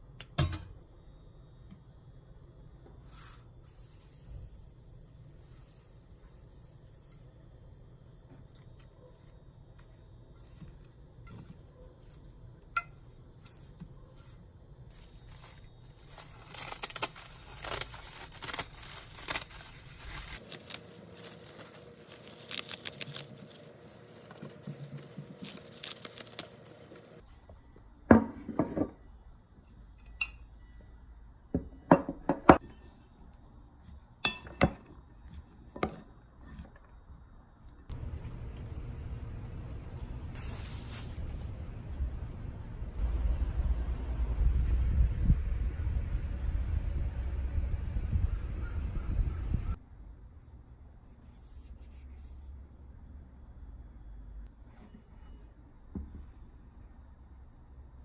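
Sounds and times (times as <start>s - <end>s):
hissing with crackles: 14.9s - 27.2s, 37.9s - 43.0s.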